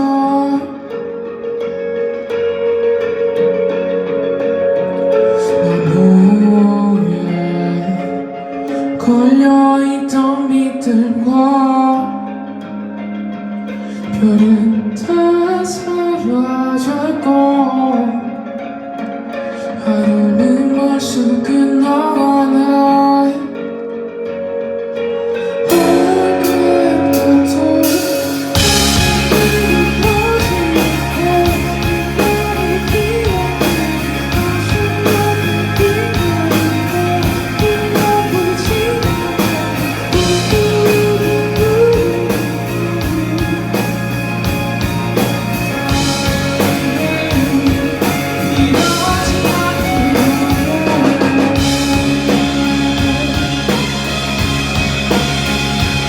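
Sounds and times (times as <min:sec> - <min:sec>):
electric guitars: 0:00.0 - 0:56.0
bass guitar: 0:24.9 - 0:56.0
drums: 0:25.4 - 0:56.0.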